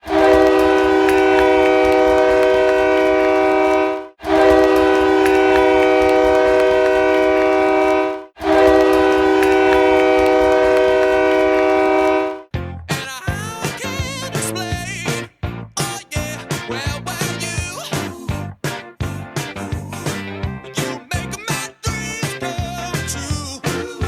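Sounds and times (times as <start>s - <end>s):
goal horn blasts: 0.0s - 12.5s.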